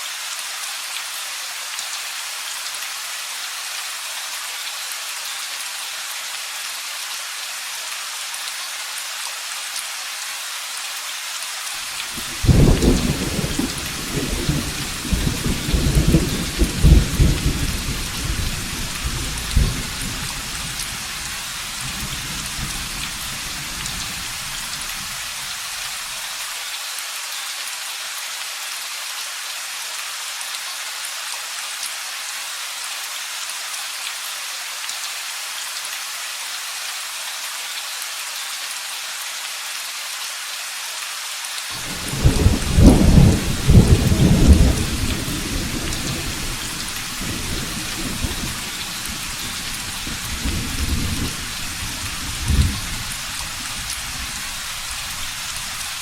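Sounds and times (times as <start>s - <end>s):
heavy rain: 0.0s - 56.0s
rolling thunder: 12.2s - 20.8s, 41.9s - 53.2s.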